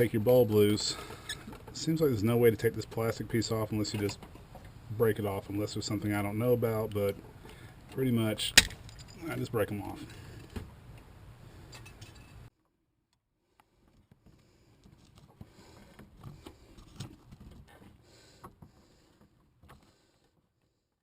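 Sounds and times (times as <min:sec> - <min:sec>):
handling noises of plastic parts: 0:13.6 - 0:20.5.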